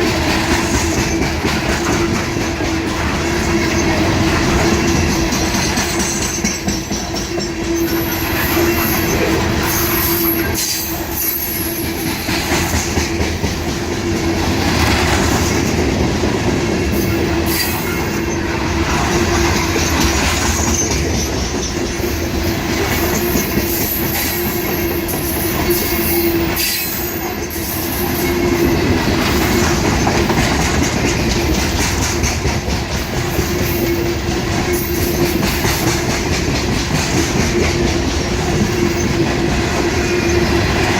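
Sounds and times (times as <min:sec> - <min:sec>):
train rumble: 0:00.0 - 0:40.9
train wheels clacking on rail joints: 0:00.0 - 0:40.9
high-pitched wheel squeal: 0:07.8 - 0:12.0, 0:23.0 - 0:28.8.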